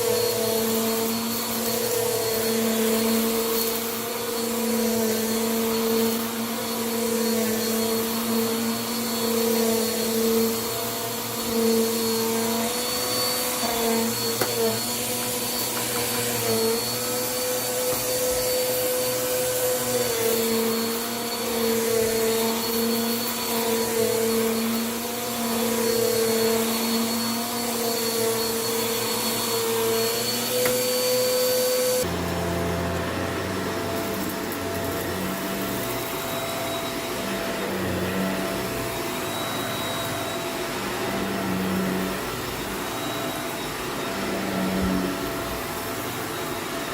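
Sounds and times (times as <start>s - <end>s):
vacuum cleaner running: 0.0s - 46.9s.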